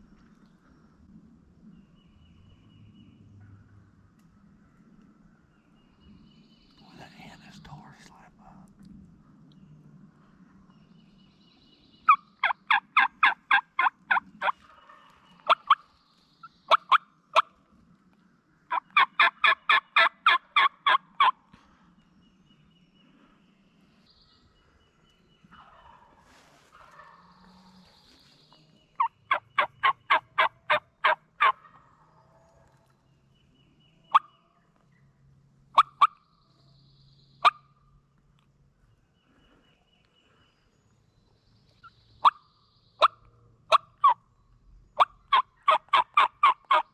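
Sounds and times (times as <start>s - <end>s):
wild turkey calling: 12.0s - 17.6s, 18.7s - 21.8s, 25.5s - 32.9s, 34.0s - 34.4s, 35.7s - 36.2s, 41.8s - 44.2s, 45.0s - 46.9s.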